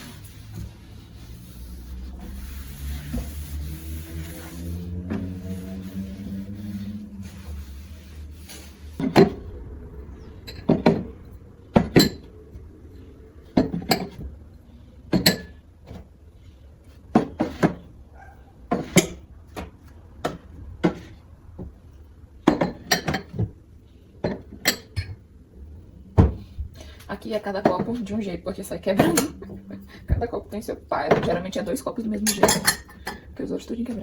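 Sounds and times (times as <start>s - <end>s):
glasses and dishes clinking: 11.8s - 12.3s, 22.5s - 23.4s, 32.2s - 33.3s.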